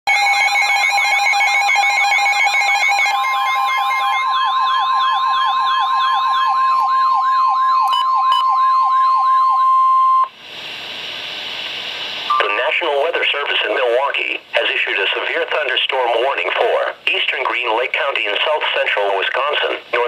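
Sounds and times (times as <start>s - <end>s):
electronic siren wails: 0.1s - 10.3s
steady alert tones: 0.3s - 10.3s
radio hiss: 10.5s - 20.0s.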